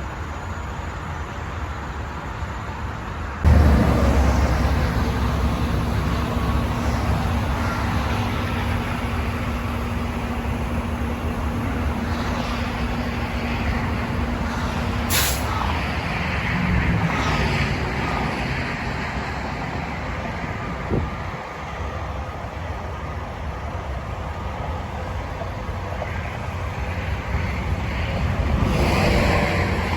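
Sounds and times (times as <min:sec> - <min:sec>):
truck engine and road noise: 0:00.0 - 0:29.9
steady low hum: 0:03.4 - 0:16.8
short hiss of air: 0:15.1 - 0:15.5.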